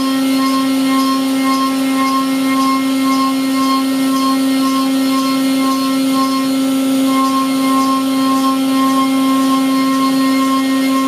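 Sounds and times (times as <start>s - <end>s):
milling machine whining: 0.0s - 11.0s.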